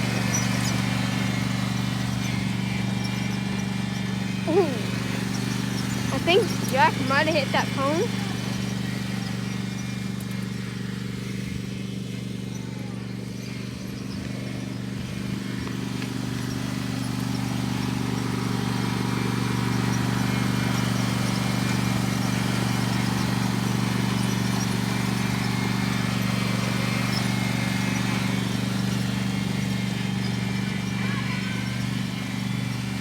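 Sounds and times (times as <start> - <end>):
lawn mower engine running: 0.0 - 33.0.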